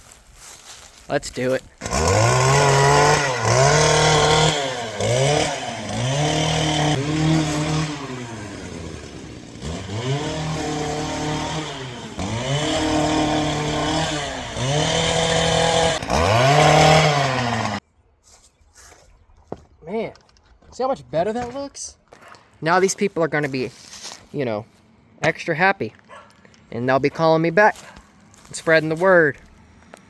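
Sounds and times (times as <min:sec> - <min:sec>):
chainsaw revving: 0:01.8 - 0:17.8.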